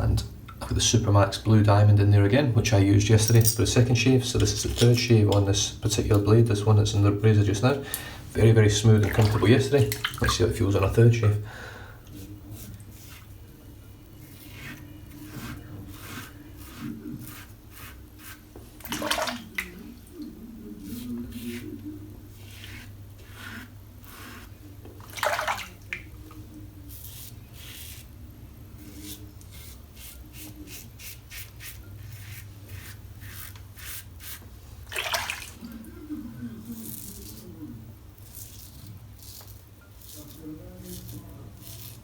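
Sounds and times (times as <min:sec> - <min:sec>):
razor scraping stubble: 0:14.2 - 0:18.6, 0:20.7 - 0:24.6, 0:28.8 - 0:34.4, 0:38.2 - 0:42.0.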